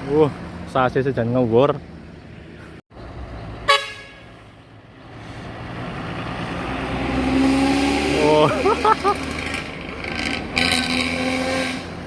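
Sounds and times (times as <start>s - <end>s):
vehicle horn toot: 3.6s - 4.3s
approaching vehicle engine: 4.6s - 12.0s.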